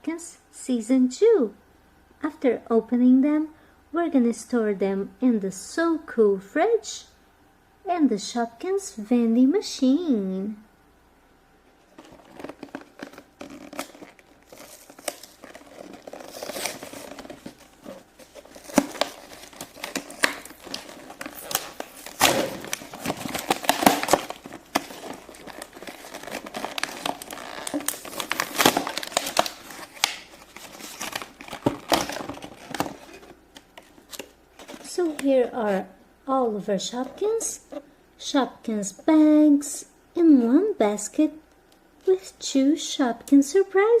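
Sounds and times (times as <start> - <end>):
plastic packaging crinkling: 11.8 - 35.4
packaging tearing: 11.9 - 35.2.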